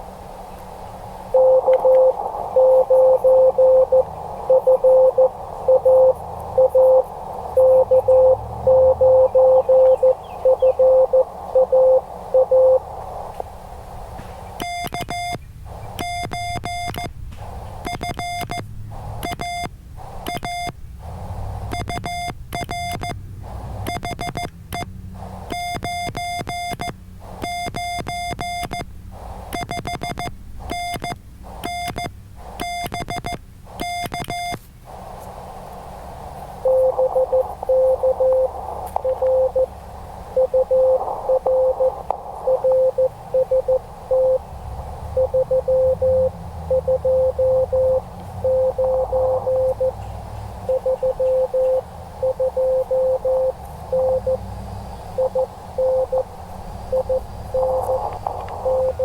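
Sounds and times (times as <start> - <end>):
radio hiss: 0.0 - 59.0
morse code sidetone beeps: 1.3 - 12.9, 14.6 - 17.1, 17.8 - 20.8, 21.6 - 34.6, 36.6 - 39.7, 40.3 - 44.5, 45.1 - 50.0, 50.6 - 54.4, 55.1 - 59.0
lower-pitched morse signal: 1.3 - 13.3, 14.6 - 59.0.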